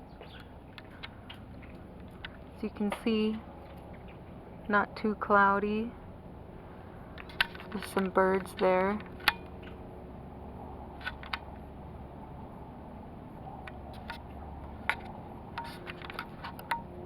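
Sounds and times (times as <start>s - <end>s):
steady low background noise: 0.0s - 17.0s
faint camera handling clicks: 14.8s - 16.8s.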